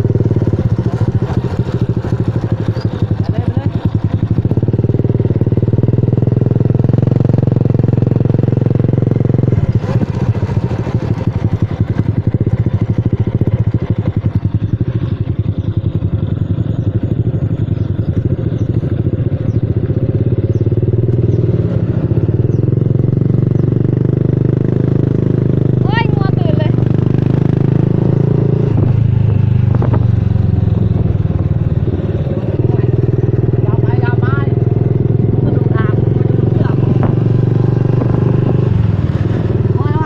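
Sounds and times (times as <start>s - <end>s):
motorcycle engine running: 0.0s - 40.0s
wind buffeting microphone: 25.2s - 40.0s.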